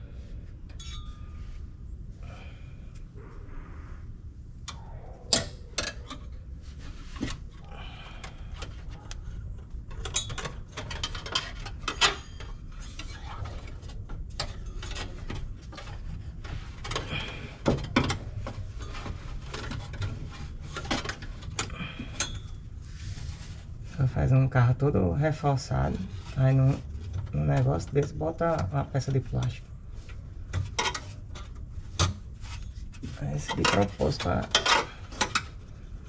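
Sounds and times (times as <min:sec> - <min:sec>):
hand tools clinking on metal tubes: 0:00.7 - 0:01.4, 0:10.0 - 0:12.5, 0:21.6 - 0:22.6, 0:33.4 - 0:35.4.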